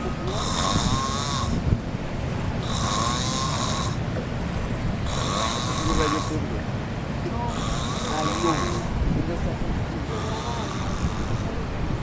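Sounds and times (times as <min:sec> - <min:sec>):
man snoring: 0:00.3 - 0:01.6, 0:02.6 - 0:04.0, 0:05.1 - 0:06.4, 0:07.5 - 0:08.9, 0:10.1 - 0:11.5.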